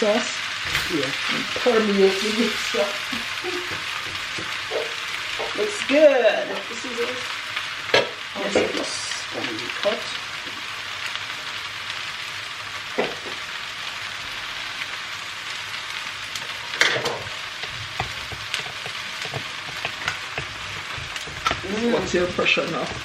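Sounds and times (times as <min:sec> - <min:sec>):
noodles sizzling in a pan: 0:00.0 - 0:23.0
stirring utensil knocks: 0:03.4 - 0:05.6, 0:17.1 - 0:23.0.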